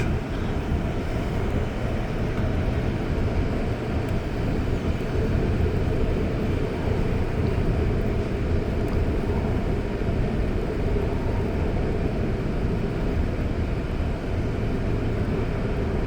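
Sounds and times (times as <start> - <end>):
light-metro train running: 0.0 - 16.0.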